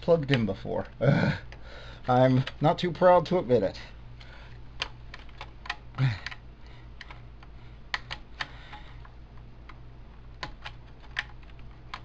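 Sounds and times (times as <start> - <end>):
person grunting: 1.0 - 1.5, 6.0 - 6.4.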